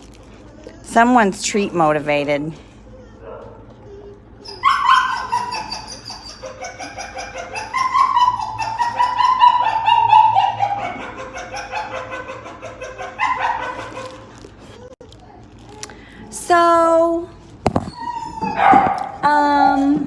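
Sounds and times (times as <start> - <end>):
dog whining: 2.9 - 15.0, 17.7 - 20.0.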